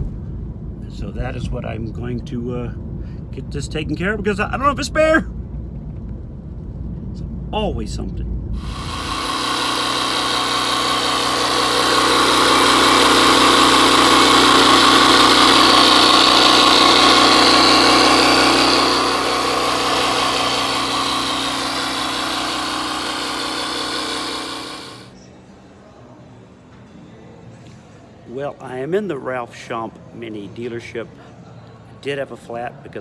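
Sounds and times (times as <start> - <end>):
electric tyre pump buzzing: 8.6 - 25.1.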